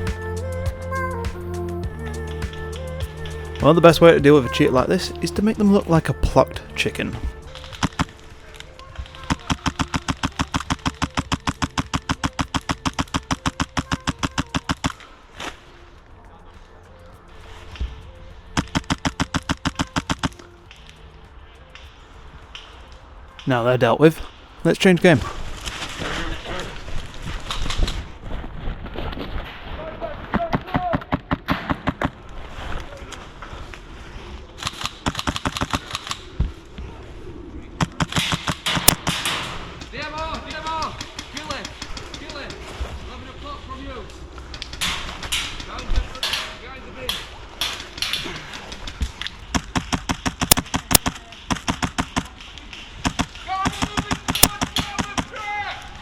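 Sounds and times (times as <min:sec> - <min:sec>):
airsoft guns firing: 0:09.3 - 0:14.9, 0:34.6 - 0:36.2, 0:37.8 - 0:39.6, 0:49.6 - 0:55.4.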